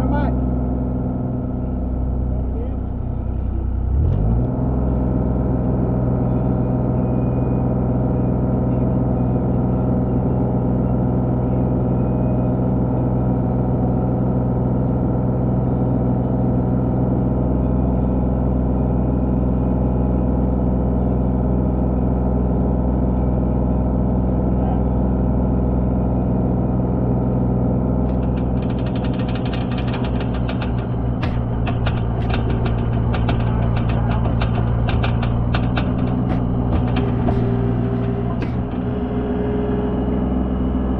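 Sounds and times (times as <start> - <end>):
engine running steadily: 0.0 - 40.9
fast rattle: 28.0 - 40.2.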